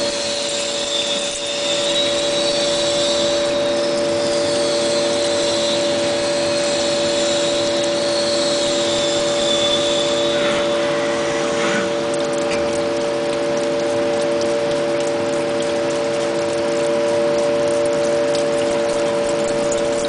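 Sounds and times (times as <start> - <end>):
high-pitched machine whine: 0.0 - 20.0
cnc machine humming: 8.4 - 13.1.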